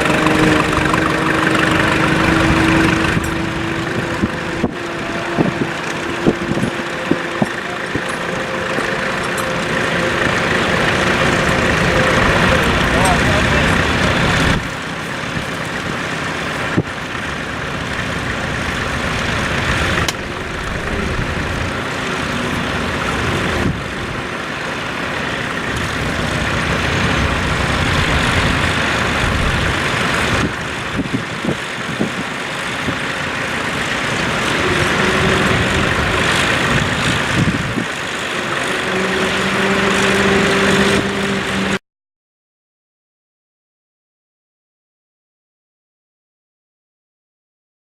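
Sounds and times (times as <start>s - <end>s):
steady pitched hum: 0.0s - 41.8s
tractor engine running: 0.0s - 41.8s.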